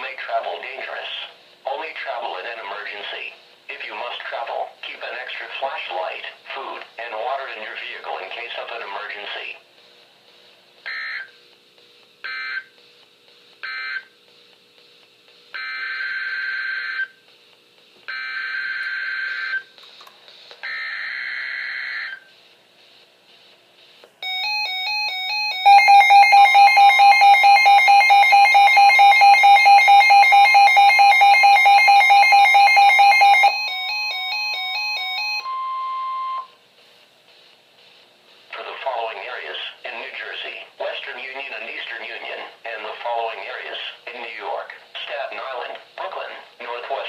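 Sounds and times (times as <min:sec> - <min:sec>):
rapid electronic alarm beeps: 0:10.8 - 0:11.4, 0:12.2 - 0:12.8, 0:13.6 - 0:14.2, 0:15.5 - 0:17.2, 0:18.1 - 0:19.7, 0:20.6 - 0:22.3, 0:24.2 - 0:36.6
steady warning tone: 0:24.2 - 0:36.6.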